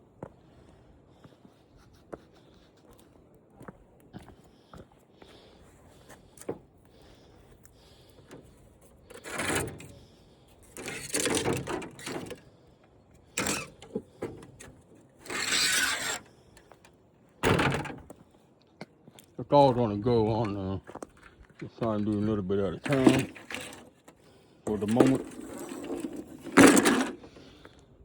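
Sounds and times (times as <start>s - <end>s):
parts rustling and scraping: 7.9s - 12.5s, 13.2s - 18.2s, 19.7s - 27.8s.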